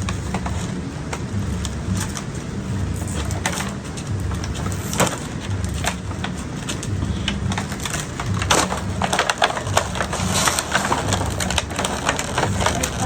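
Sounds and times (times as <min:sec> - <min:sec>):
packaging crackling and clicking: 0:00.0 - 0:13.0
packaging snapping: 0:02.9 - 0:13.0.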